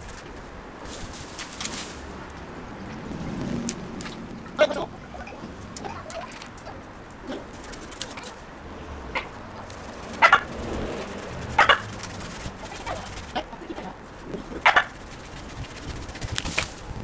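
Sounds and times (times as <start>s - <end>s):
chickens clucking: 4.1s - 16.0s.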